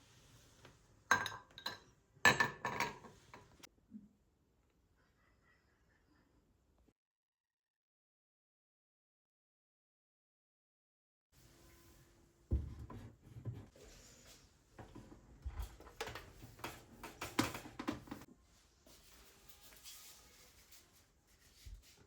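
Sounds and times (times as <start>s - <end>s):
objects knocking and clattering: 1.1s - 3.6s, 14.8s - 18.3s.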